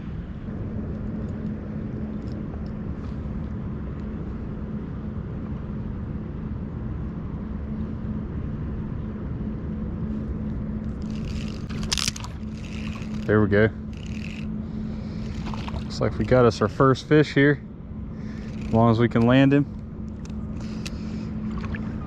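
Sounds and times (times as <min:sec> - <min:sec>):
constant low hum: 0:00.0 - 0:22.0
road traffic rumble: 0:07.2 - 0:22.0.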